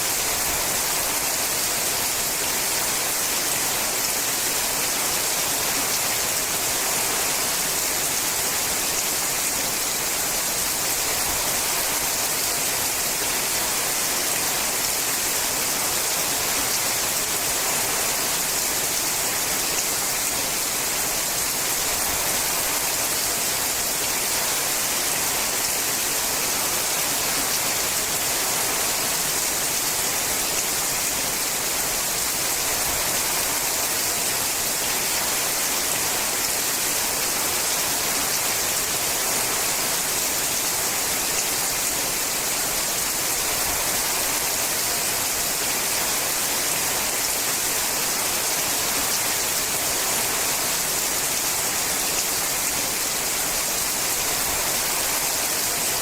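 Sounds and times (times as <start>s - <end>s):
heavy rain on a metal roof: 0.0s - 56.0s.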